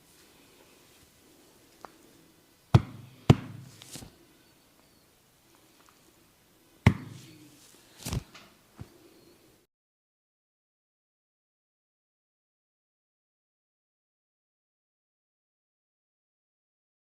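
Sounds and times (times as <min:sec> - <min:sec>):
hands slapping head: 0:02.8 - 0:04.1, 0:06.9 - 0:07.4, 0:08.0 - 0:08.3.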